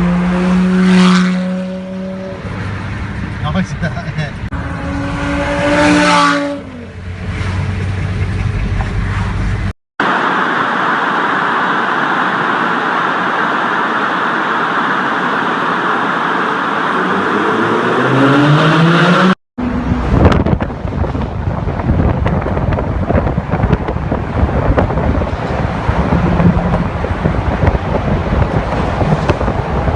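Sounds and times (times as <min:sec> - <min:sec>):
sports car engine accelerating: 0:00.0 - 0:03.4, 0:04.4 - 0:09.6, 0:15.9 - 0:29.9.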